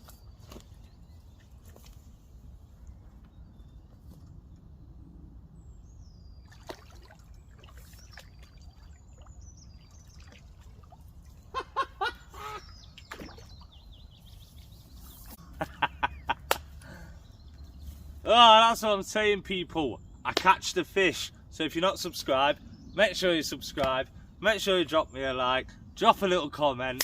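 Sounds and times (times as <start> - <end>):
low wind rumble: 0.0 - 26.8
waterfowl calling: 7.6 - 13.7.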